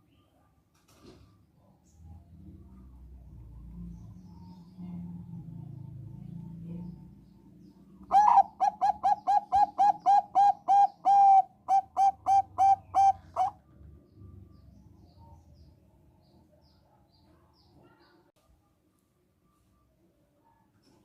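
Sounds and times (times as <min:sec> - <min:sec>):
dove cooing: 0:08.1 - 0:13.6.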